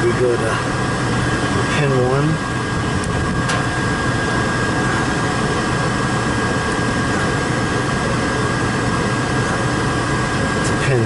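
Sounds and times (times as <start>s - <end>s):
furnace inducer motor whining: 0.0s - 11.0s.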